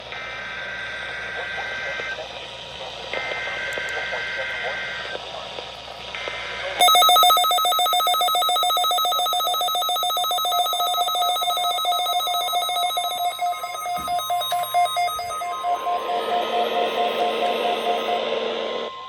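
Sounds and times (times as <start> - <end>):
pulsing electronic alarm trill: 6.8 - 19.0.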